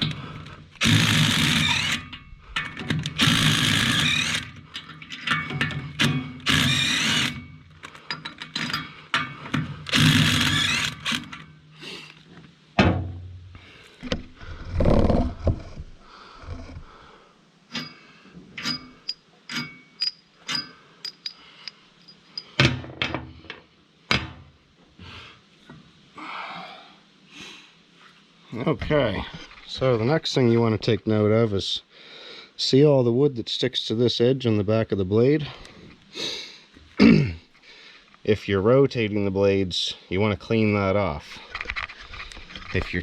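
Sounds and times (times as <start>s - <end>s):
metal tools clanking: 1.7s - 10.1s, 18.6s - 22.6s.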